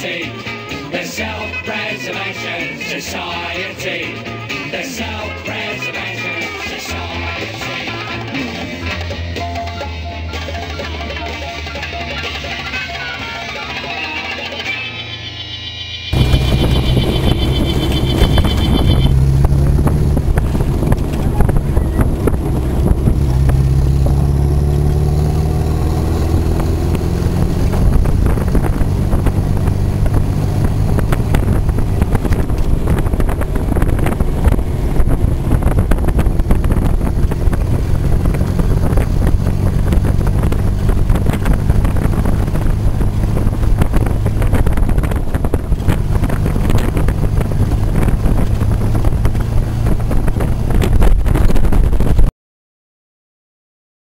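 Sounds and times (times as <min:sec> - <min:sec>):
car engine running: 0:15.0 - 0:52.3
wind noise on microphone: 0:16.1 - 0:52.3.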